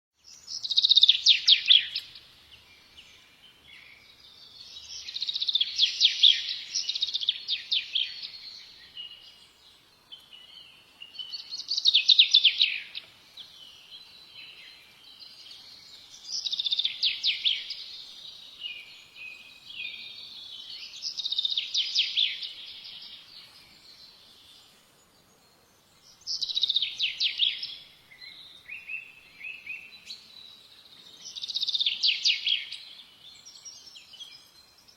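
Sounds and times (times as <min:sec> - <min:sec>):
songbird trilling and chirping: 0:00.2 - 0:34.9.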